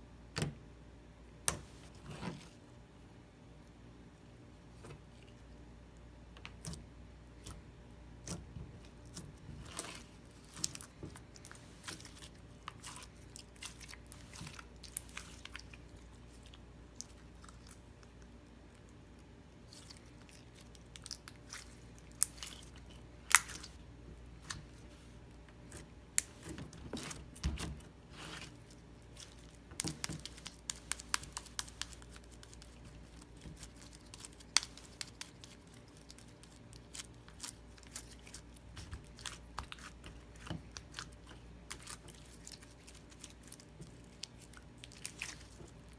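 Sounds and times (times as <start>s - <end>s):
slime squishing crackles and pops: 29.2s - 38.2s.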